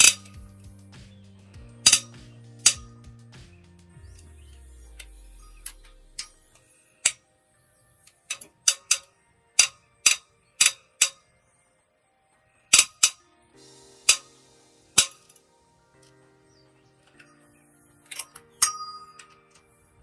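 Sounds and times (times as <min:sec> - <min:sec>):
metallic clicks of wrench: 0:01.8 - 0:02.8, 0:08.0 - 0:11.2, 0:12.8 - 0:13.2.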